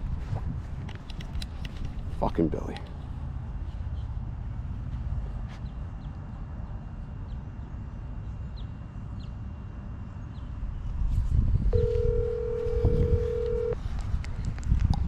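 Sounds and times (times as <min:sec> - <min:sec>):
wind rumble on microphone: 0:00.0 - 0:15.0
phone ringback tone: 0:11.7 - 0:13.8.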